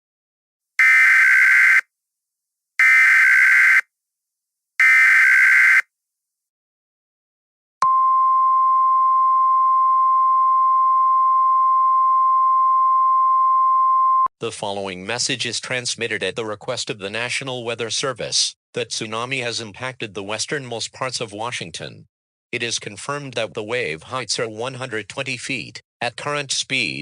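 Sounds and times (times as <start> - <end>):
digital data tone bursts: 0.8 - 1.8, 2.8 - 3.8, 4.8 - 5.8.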